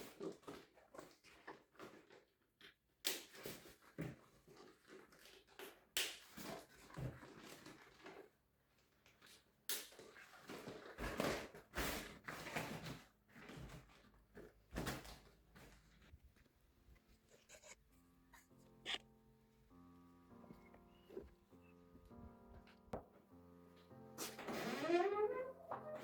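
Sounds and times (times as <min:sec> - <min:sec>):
rustling and scraping: 0:10.2 - 0:19.0, 0:23.9 - 0:26.0.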